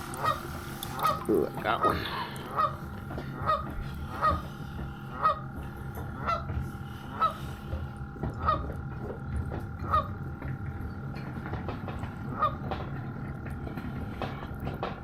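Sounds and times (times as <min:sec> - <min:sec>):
goose honking: 0:01.0 - 0:02.8.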